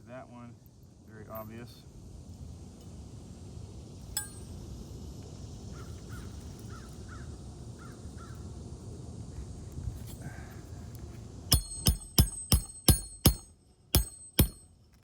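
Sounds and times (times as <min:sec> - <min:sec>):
low background rumble: 0:00.0 - 0:15.0
sharp ringing tap: 0:04.2 - 0:04.5, 0:11.5 - 0:14.7.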